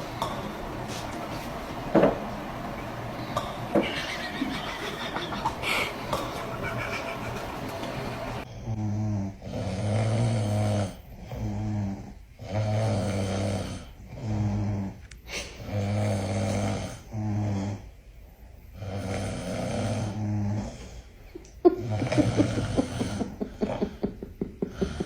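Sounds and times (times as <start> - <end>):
person snoring: 8.5 - 15.0, 15.6 - 17.9, 18.8 - 21.1, 21.8 - 25.0.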